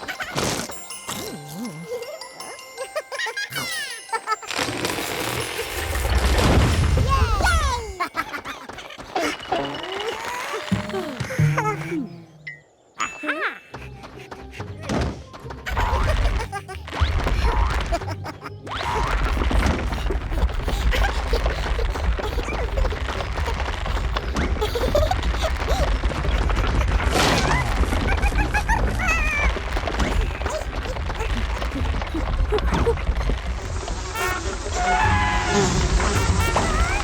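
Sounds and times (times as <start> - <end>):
rising squeaky glides: 8.6 - 13.8, 31.7 - 37.0
cartoon vocal noises: 9.1 - 15.0, 27.0 - 37.0
background music: 10.8 - 21.1
loud crash: 33.1 - 37.0
wavering squeal: 33.9 - 37.0.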